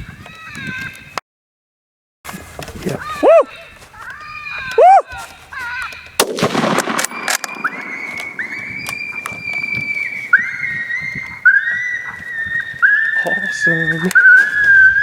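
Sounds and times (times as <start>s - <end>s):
coyotes howling: 3.0s - 15.0s.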